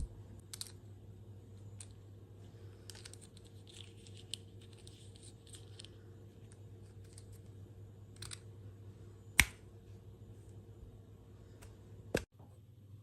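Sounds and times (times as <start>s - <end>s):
crisp clicking and crinkling: 2.8s - 7.5s.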